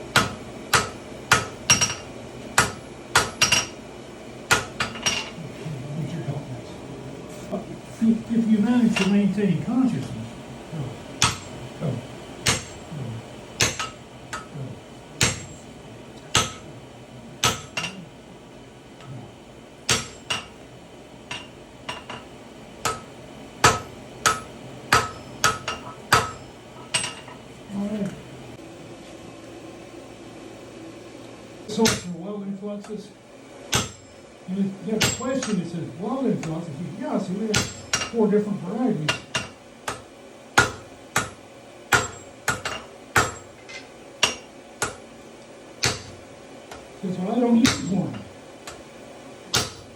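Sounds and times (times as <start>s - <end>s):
hammer striking iron on anvil: 0.1s - 3.8s, 4.5s - 5.3s, 8.9s - 9.2s, 11.2s - 11.6s, 12.4s - 12.8s, 13.6s - 14.5s, 15.2s - 15.6s, 16.3s - 16.6s, 17.4s - 18.0s, 19.8s - 20.6s, 21.3s - 27.4s, 31.7s - 32.1s, 33.7s - 34.2s, 35.0s - 35.6s, 37.5s - 38.2s, 39.1s - 45.0s, 45.8s - 46.9s, 47.6s - 48.8s, 49.5s - 49.9s.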